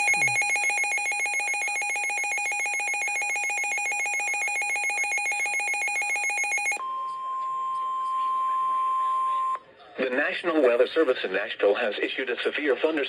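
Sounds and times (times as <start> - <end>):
warbling electronic alert alarm: 0.0 - 6.8.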